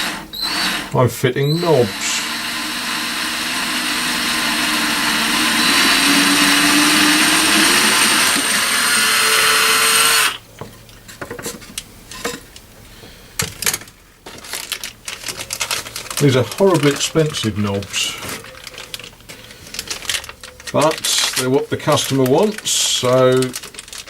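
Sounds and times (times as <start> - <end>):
electric drill drilling wood: 0.0 - 10.4.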